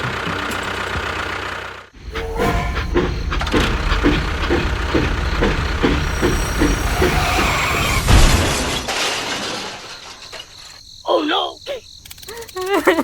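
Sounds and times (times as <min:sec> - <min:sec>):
gearing clacking: 0:02.0 - 0:10.8.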